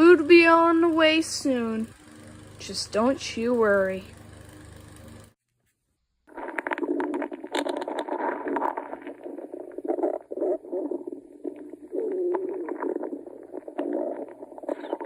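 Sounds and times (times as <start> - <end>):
stomach growling: 6.3 - 15.0.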